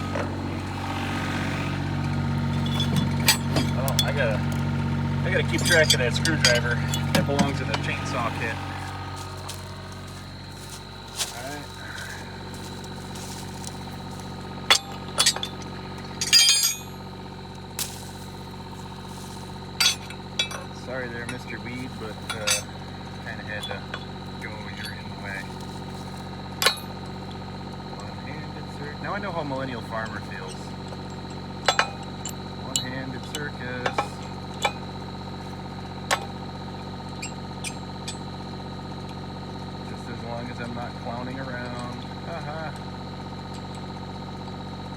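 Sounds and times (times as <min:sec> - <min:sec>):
excavator engine idling: 0:00.0 - 0:44.9
metal objects clinking and clanking: 0:02.4 - 0:04.7, 0:05.4 - 0:13.8, 0:14.7 - 0:17.0, 0:19.8 - 0:21.5, 0:22.2 - 0:22.7.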